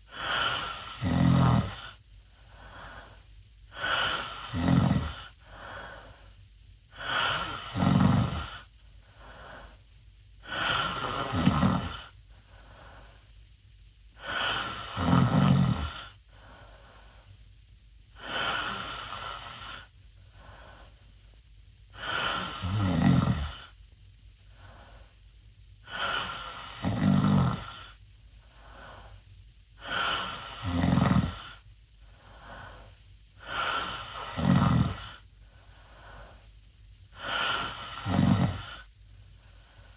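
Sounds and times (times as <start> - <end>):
soft breathing: 0.0 - 39.9
boy snoring loudly: 0.1 - 2.0, 3.7 - 5.8, 6.9 - 8.7, 10.4 - 12.2, 14.2 - 16.2, 18.2 - 19.9, 22.0 - 23.8, 25.8 - 28.0, 29.8 - 31.6, 33.4 - 35.2, 37.2 - 38.9.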